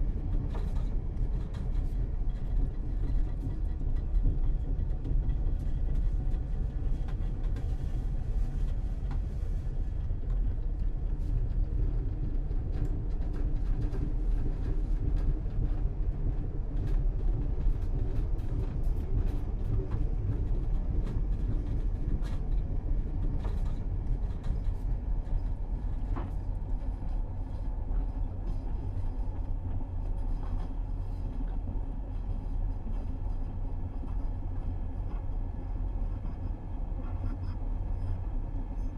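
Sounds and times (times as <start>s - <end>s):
train rumbling: 0.0s - 38.9s.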